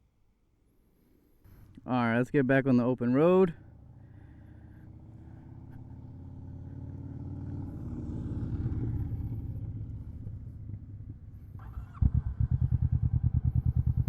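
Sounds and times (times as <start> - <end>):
motorcycle engine idling: 3.6 - 14.0.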